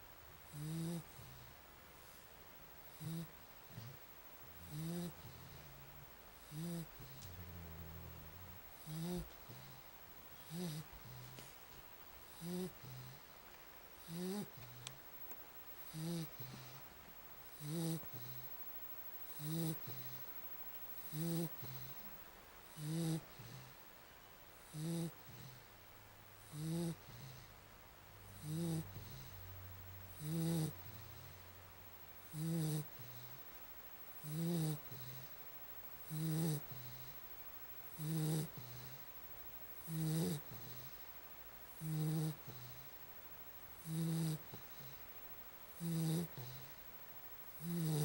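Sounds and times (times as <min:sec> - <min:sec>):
dog snoring: 0:00.4 - 0:02.2, 0:02.8 - 0:11.6, 0:12.2 - 0:13.4, 0:14.0 - 0:15.0, 0:15.8 - 0:16.9, 0:17.5 - 0:18.6, 0:19.3 - 0:20.3, 0:21.0 - 0:22.1, 0:22.7 - 0:23.8, 0:24.6 - 0:25.7, 0:26.4 - 0:27.6, 0:28.2 - 0:31.6, 0:32.2 - 0:33.4, 0:34.2 - 0:35.4, 0:36.0 - 0:37.2, 0:37.9 - 0:39.1, 0:39.8 - 0:41.1, 0:41.8 - 0:42.9, 0:43.8 - 0:45.0, 0:45.7 - 0:46.8, 0:47.6 - 0:48.0.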